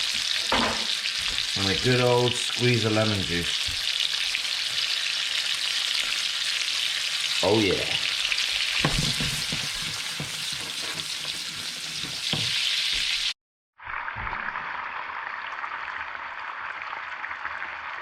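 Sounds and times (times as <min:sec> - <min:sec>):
fish sizzling in a frying pan: 0:00.0 - 0:13.4.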